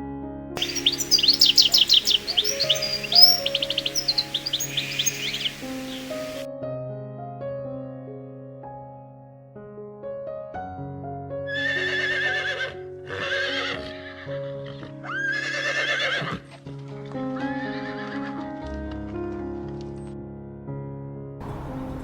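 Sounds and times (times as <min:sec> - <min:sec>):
background music sustained notes: 0:00.6 - 0:06.5
horse whinnying: 0:15.1 - 0:16.4.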